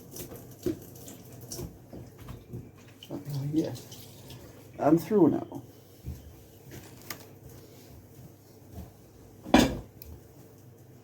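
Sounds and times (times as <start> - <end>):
kitchenware clinking: 9.4 - 10.0.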